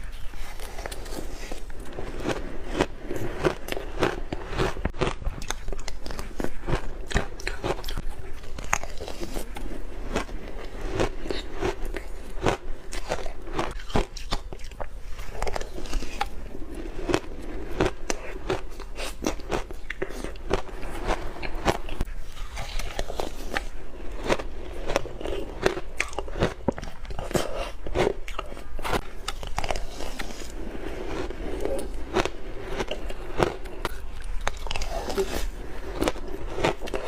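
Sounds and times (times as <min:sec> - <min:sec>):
frozen ice crunching: 0:22.6 - 0:37.0.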